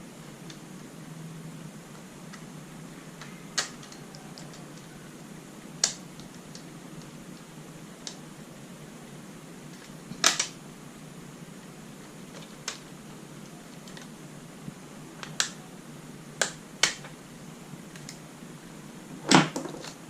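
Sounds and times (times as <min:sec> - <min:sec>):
steady low hum: 0:00.0 - 0:20.0
clicks of small laptop parts: 0:03.2 - 0:04.9, 0:16.4 - 0:17.1.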